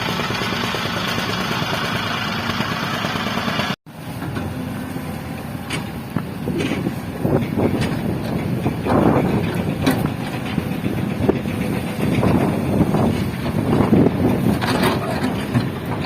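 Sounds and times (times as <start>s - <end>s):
heavy diesel machinery rumbling: 0.0s - 16.0s
sharp knocks and clanks: 5.7s - 16.0s.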